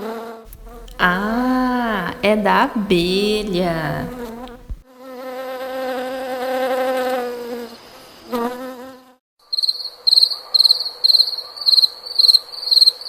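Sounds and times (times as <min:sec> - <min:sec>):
bee buzzing: 0:00.5 - 0:04.8
cricket chirping: 0:09.6 - 0:13.0.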